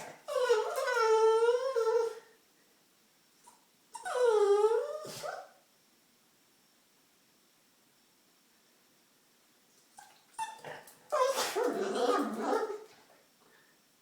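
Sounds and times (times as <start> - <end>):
dog whining: 0.0 - 2.3, 3.9 - 5.6, 10.0 - 12.9.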